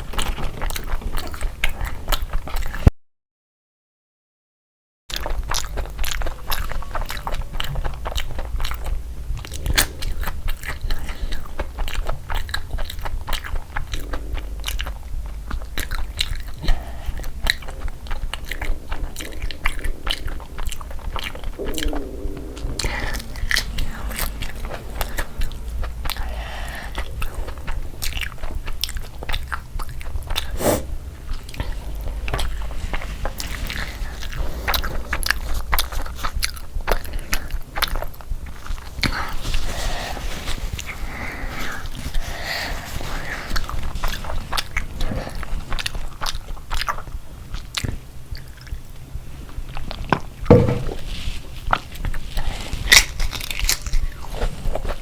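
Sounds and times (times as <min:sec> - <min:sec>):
chewing and biting: 0:00.0 - 0:02.8, 0:05.1 - 0:55.0
wet mouth clicks: 0:05.1 - 0:39.4
steady low hum: 0:05.1 - 0:55.0
crisp crunches: 0:50.9 - 0:55.0.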